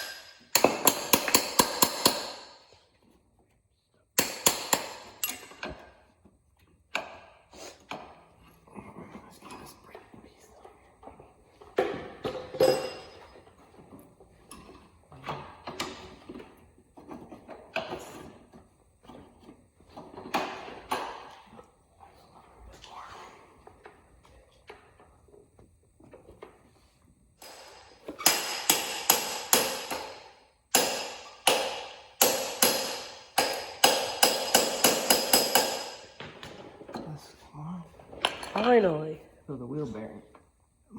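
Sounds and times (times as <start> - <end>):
metallic knocks and clinks: 4.2 - 5.9, 12.2 - 13.4.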